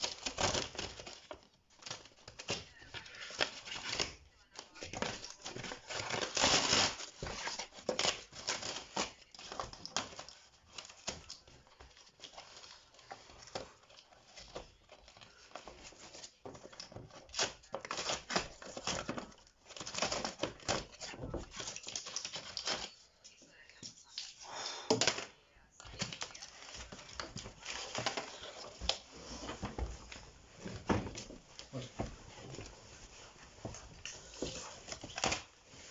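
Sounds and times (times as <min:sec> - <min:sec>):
packaging being torn and crumpled: 0:00.0 - 0:11.5.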